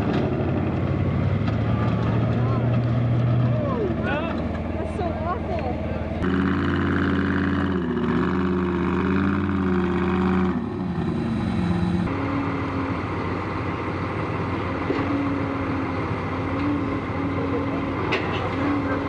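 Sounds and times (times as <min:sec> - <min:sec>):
rough road and drivetrain noise: 0:00.0 - 0:19.0
truck engine under load: 0:00.0 - 0:19.0.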